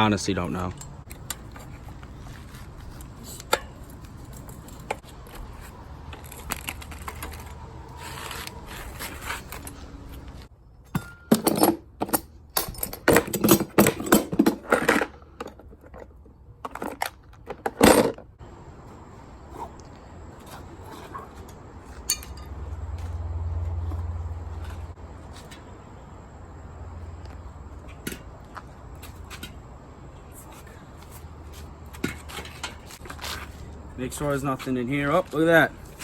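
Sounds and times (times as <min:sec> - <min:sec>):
clanks and metallic rattling: 0:10.9 - 0:16.1.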